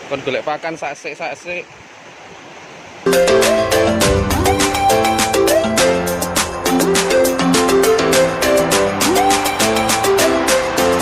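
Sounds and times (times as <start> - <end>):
background music with steady beat: 3.1 - 11.0.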